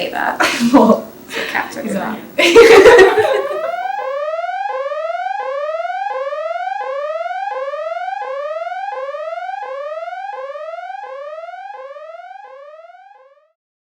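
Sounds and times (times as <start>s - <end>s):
synthesized rising tone: 3.4s - 13.0s.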